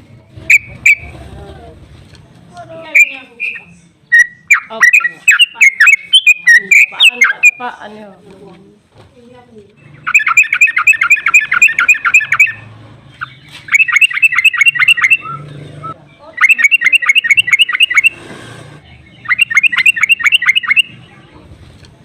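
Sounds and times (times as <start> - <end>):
bird trilling call: 0.5 - 1.1, 2.9 - 7.7, 9.8 - 18.2, 19.1 - 21.0.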